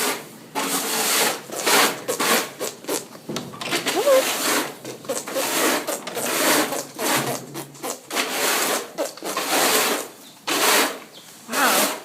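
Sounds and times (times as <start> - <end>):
horse blowing through lips: 3.8 - 12.0.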